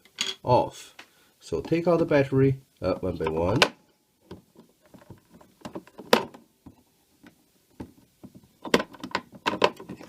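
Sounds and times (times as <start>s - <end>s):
batteries clicking and knocking: 7.8s - 10.0s.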